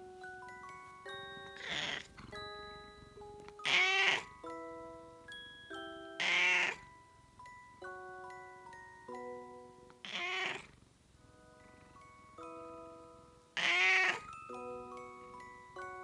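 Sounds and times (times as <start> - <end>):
soft chiming music: 0.0 - 10.1, 11.2 - 16.0
cat meowing: 1.6 - 2.1, 3.6 - 4.4, 6.2 - 6.8, 10.0 - 10.8, 13.6 - 14.3.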